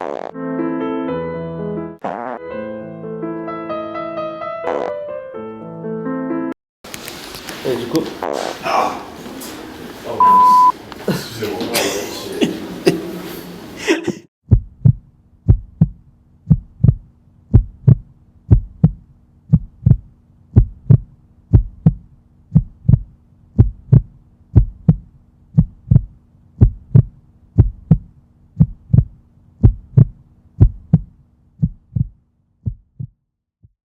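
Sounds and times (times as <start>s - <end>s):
heartbeat thumps: 14.4s - 33.8s.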